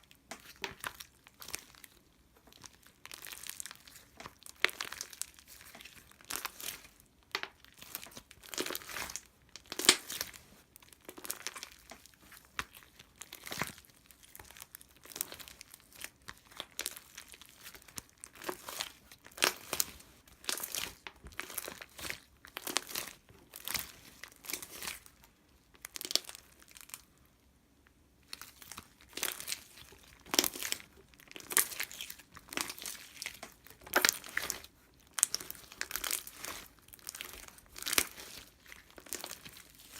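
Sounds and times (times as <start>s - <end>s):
crinkling and rustling: 0.2s - 27.1s, 28.2s - 39.9s.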